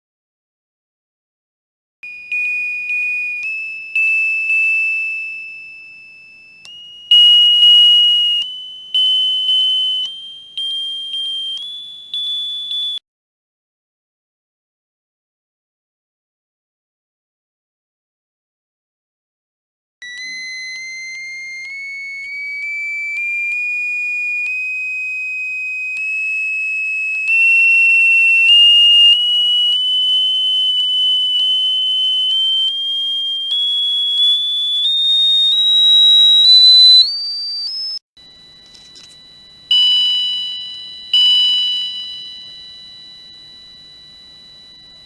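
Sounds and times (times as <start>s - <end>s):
electronic chime notes: 2.0s - 13.0s, 38.2s - 45.0s
electronic whistle-like tone: 2.0s - 13.0s, 20.0s - 45.0s.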